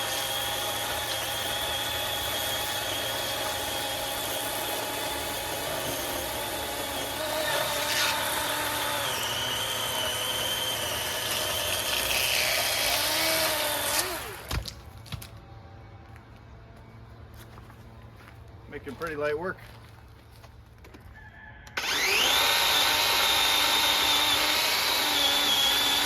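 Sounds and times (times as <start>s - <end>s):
motor spinning down: 0.0s - 14.5s, 21.7s - 26.0s
electric chainsaw cutting wood: 0.0s - 14.7s, 21.7s - 26.0s.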